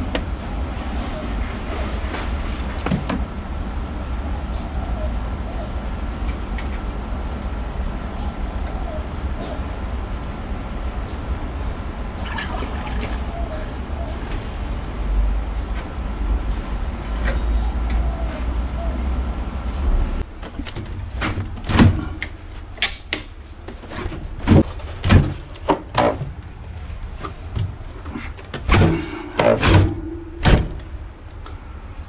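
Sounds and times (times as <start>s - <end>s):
low rumbling noise: 23.8s - 32.0s.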